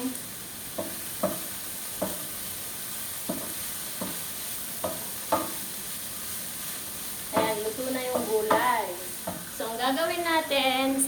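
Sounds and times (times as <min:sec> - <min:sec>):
vegetables sizzling in a pan: 0:00.0 - 0:11.0
spatula knocking against pan: 0:00.7 - 0:02.3, 0:03.2 - 0:04.2, 0:04.8 - 0:05.6, 0:07.3 - 0:09.5.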